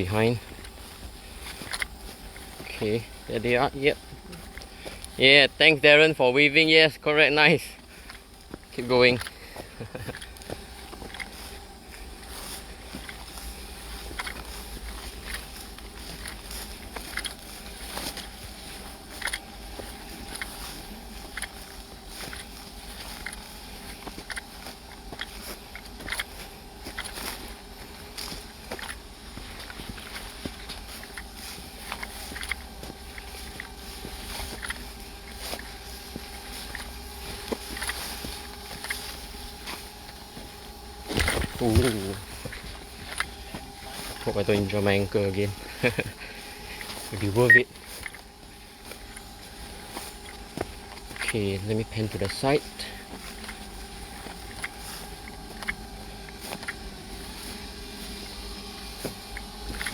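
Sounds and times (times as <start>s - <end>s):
faint steady whine: 0.0s - 59.9s
footsteps on forest trail: 0.0s - 59.9s
low hum: 0.0s - 59.9s
small crackles: 0.0s - 59.9s
phone microphone handling noise: 34.5s - 44.3s.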